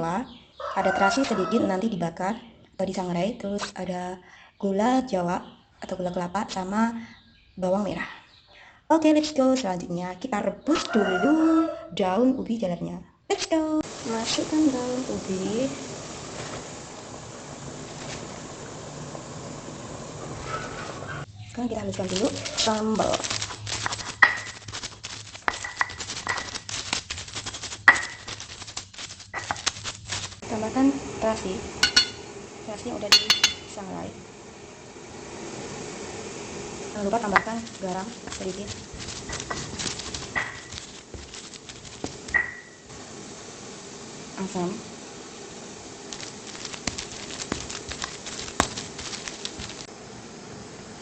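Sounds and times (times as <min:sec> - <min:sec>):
pestle grinding in a mortar: 0:21.9 - 0:30.4, 0:31.8 - 0:32.2, 0:33.1 - 0:33.7, 0:37.4 - 0:42.7, 0:46.1 - 0:49.9
pestle knocking in a mortar: 0:25.4 - 0:26.6, 0:31.8 - 0:32.2, 0:33.1 - 0:33.7.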